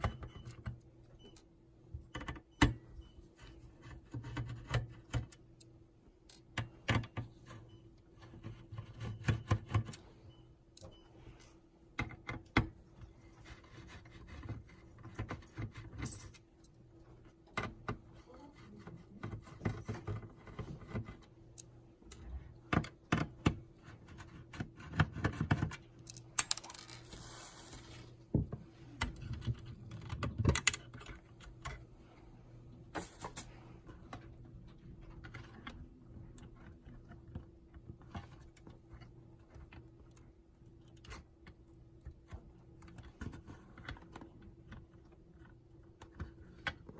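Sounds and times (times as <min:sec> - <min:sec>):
clicks and taps of handling parts: 0:19.2 - 0:27.0.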